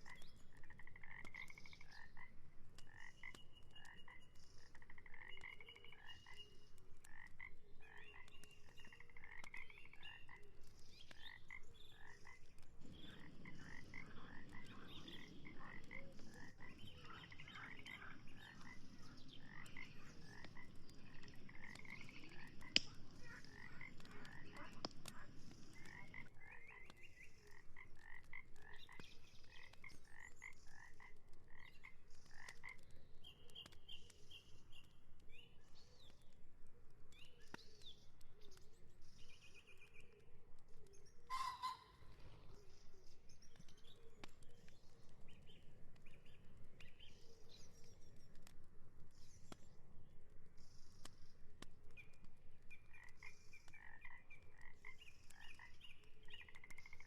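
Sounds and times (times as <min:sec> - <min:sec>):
frogs croaking: 0:00.0 - 0:06.5, 0:07.1 - 0:10.5, 0:11.2 - 0:32.8, 0:53.0 - 0:55.8.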